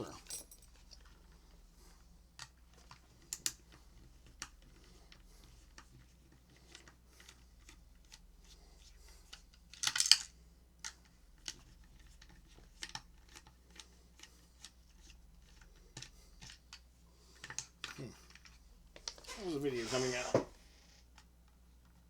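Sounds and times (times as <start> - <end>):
small clicks and taps from handling: 2.4 - 8.2, 8.8 - 19.2.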